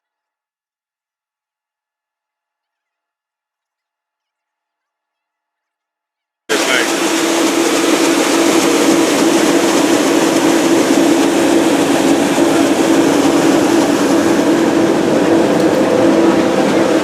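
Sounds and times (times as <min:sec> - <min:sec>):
boat engine hum: 0:06.5 - 0:17.0
water rushing hiss: 0:06.5 - 0:17.0.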